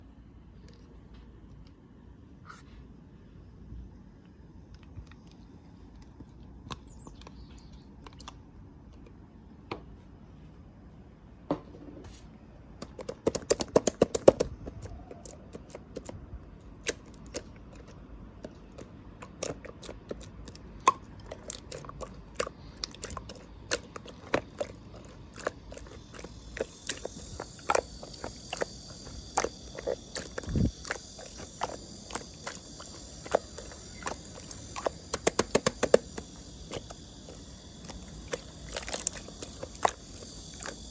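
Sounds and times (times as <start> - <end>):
sticky slime clicks and pops: 12.8 - 16.2, 30.4 - 36.9
steady high chirring: 25.0 - 40.9.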